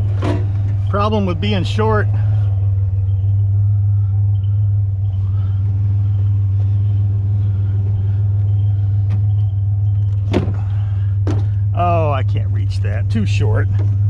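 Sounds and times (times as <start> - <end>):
vehicle engine idling: 0.0 - 14.0.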